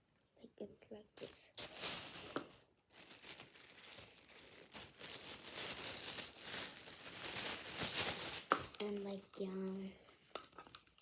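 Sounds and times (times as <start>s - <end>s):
packaging crinkling: 1.2s - 9.2s.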